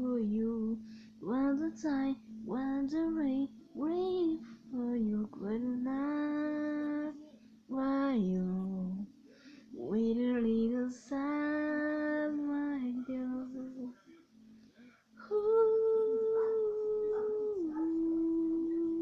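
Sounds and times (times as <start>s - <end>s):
girl singing held notes: 15.2s - 19.0s.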